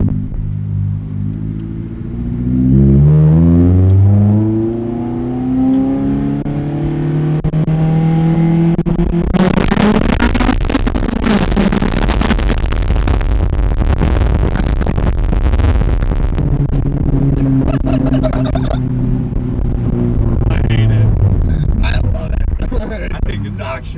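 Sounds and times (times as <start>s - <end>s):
car engine revving: 0.0s - 23.9s
loud rough rushing noise: 7.4s - 23.9s.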